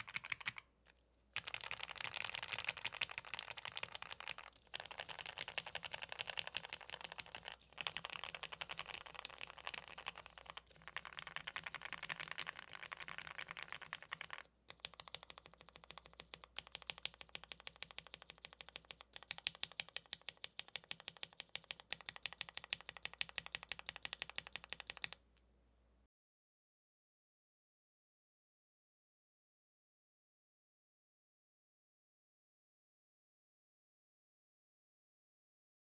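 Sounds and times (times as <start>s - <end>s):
typing on mechanical keyboard: 0.0s - 0.6s, 1.4s - 25.2s.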